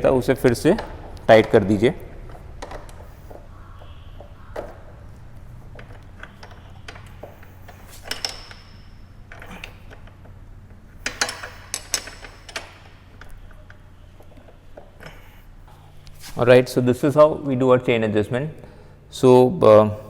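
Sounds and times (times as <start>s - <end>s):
spanner clicking on metal: 5.8s - 10.3s, 11.0s - 13.8s.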